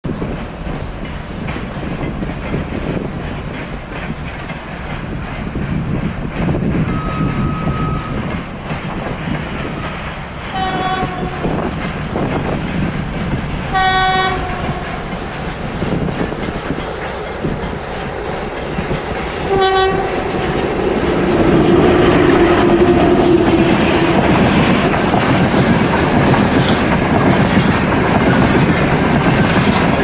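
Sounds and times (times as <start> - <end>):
freight train rumbling past: 0.0 - 30.0
train horn blasts: 6.8 - 8.3, 9.7 - 11.7, 13.7 - 15.1, 19.4 - 24.6.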